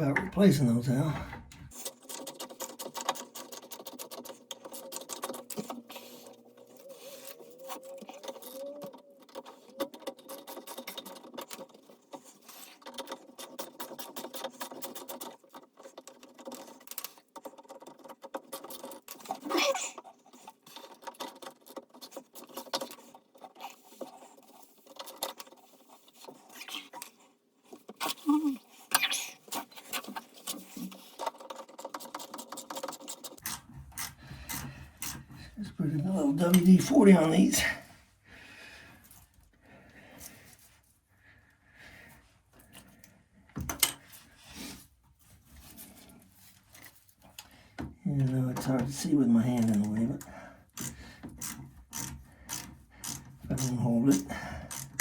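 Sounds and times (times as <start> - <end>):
hand tools clicking and scraping: 0.0 - 37.9, 42.6 - 55.0
metal pipe fittings handled: 29.5 - 35.6.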